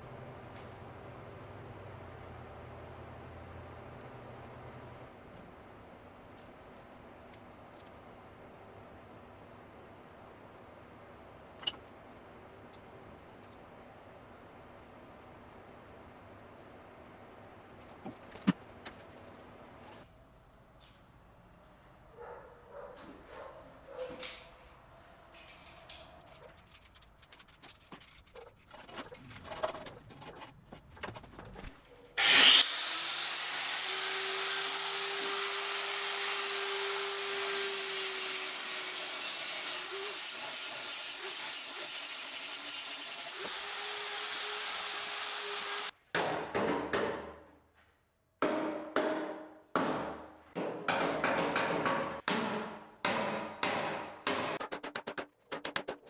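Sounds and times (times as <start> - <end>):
power tool humming and hissing: 32.2 - 39.1.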